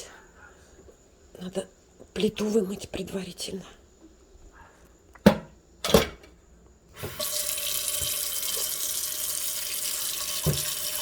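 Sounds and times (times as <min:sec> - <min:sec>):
water running into sink: 0:07.0 - 0:11.0.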